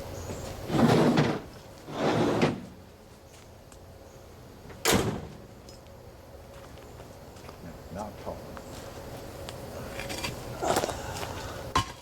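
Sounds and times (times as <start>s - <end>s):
tailgate scraping and rattling: 0.4s - 2.8s
tailgate slamming shut: 4.7s - 5.5s.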